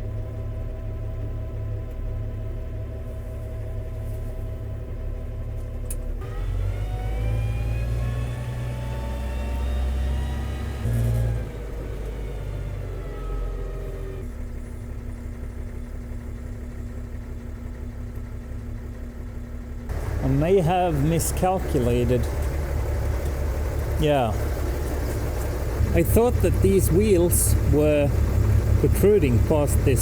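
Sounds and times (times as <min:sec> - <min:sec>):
tractor diesel engine revving: 0:06.2 - 0:14.5, 0:19.9 - 0:30.0.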